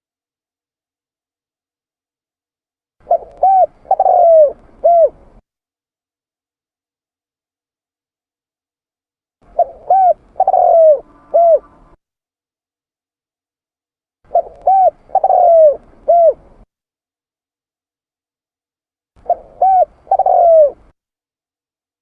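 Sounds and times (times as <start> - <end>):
dove cooing: 3.0 - 5.4, 9.5 - 12.0, 14.3 - 16.6, 19.2 - 20.9.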